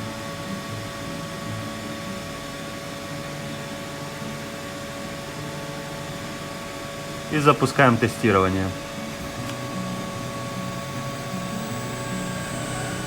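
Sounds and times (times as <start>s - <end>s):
machine hum with steady tones: 8.5s - 13.0s.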